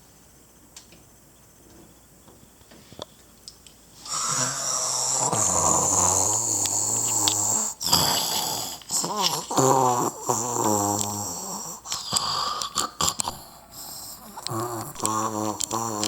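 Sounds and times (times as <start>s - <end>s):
toy figures snoring: 4.0s - 16.0s
faint clicks: 5.6s - 16.0s.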